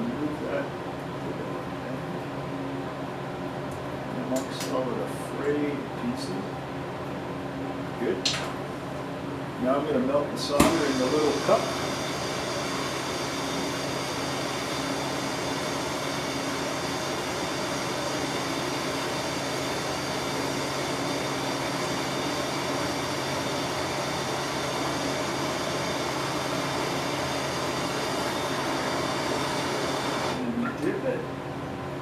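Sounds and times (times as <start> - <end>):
soldering torch hissing: 10.7 - 30.4.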